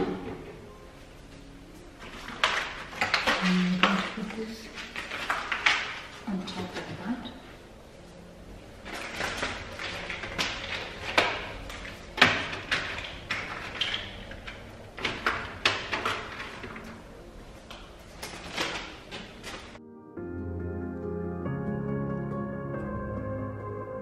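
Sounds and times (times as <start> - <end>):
containers knocking and clattering: 2.0 - 7.0, 8.9 - 17.0.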